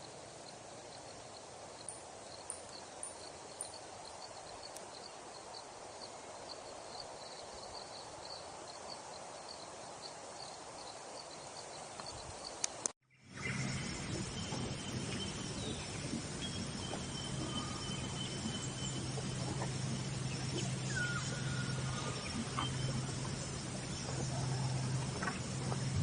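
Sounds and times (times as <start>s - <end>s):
faint bird chirps: 13.1s - 26.0s
low hum: 13.2s - 26.0s.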